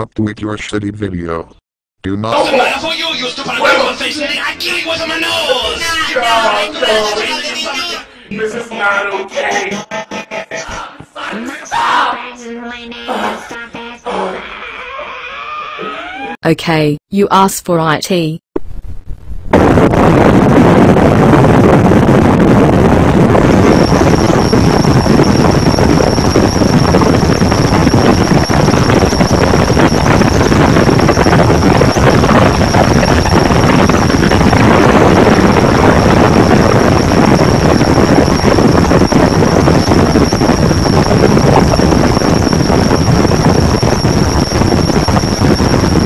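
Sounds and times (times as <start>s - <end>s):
harsh distorted noise: 2.3s - 12.1s, 18.6s - 46.0s
high-pitched whine: 2.3s - 12.1s, 19.5s - 46.0s.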